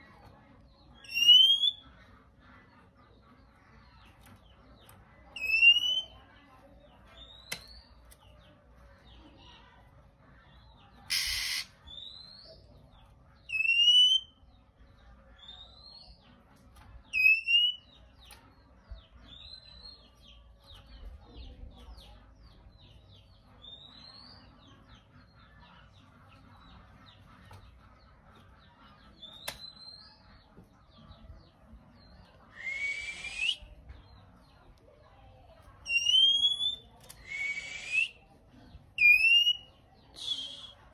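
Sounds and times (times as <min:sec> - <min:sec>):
bird whistled calls: 0:01.0 - 0:01.8, 0:11.1 - 0:12.3, 0:13.5 - 0:14.3, 0:32.5 - 0:33.6, 0:35.9 - 0:38.2, 0:39.0 - 0:40.8.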